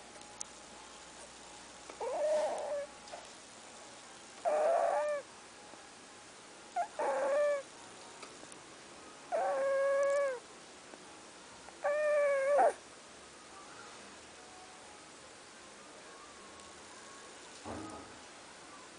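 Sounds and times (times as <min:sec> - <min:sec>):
dog snoring with whining whistle: 0:02.0 - 0:02.9, 0:04.5 - 0:05.2, 0:09.3 - 0:10.3.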